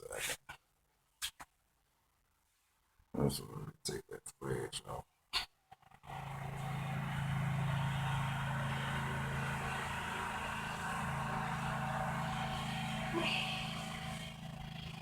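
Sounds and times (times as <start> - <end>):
motor humming: 6.1 - 15.0.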